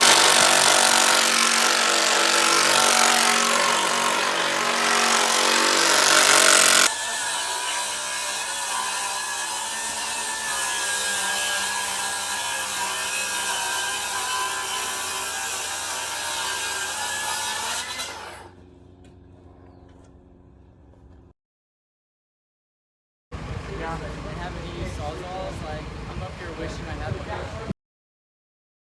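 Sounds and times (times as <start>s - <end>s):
power saw cutting: 0.0s - 18.6s.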